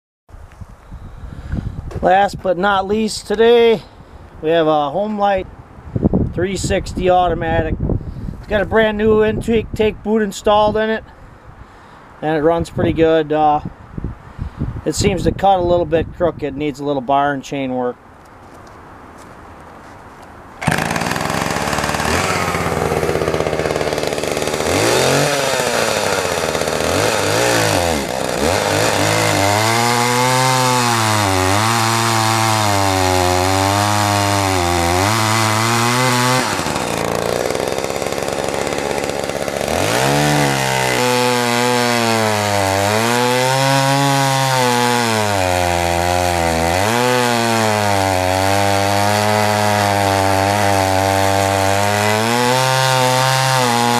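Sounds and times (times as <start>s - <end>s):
chainsaw cutting wood: 20.6s - 53.9s.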